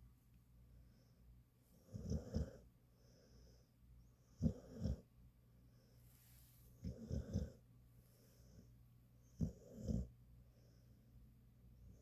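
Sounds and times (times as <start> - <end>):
dog snoring loudly: 1.8 - 2.6, 4.4 - 5.0, 6.8 - 7.6, 9.4 - 10.1.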